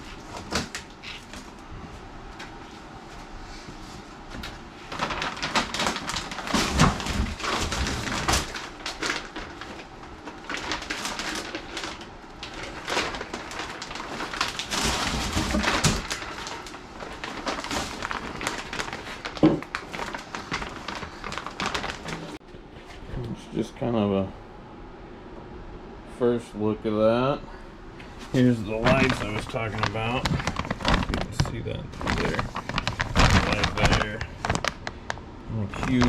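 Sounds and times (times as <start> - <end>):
packaging rustling and scraping: 4.4 - 23.0, 28.2 - 35.1, 35.8 - 36.0.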